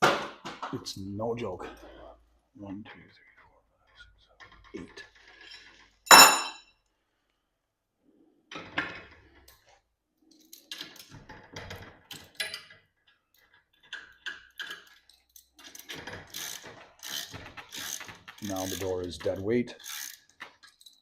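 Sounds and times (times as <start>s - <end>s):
sharp metallic clank: 6.1s - 6.6s.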